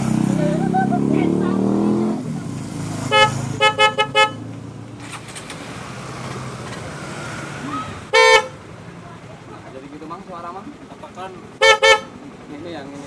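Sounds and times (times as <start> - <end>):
motorcycle horns tooting: 0.0 - 5.2, 7.7 - 8.8, 11.5 - 12.4.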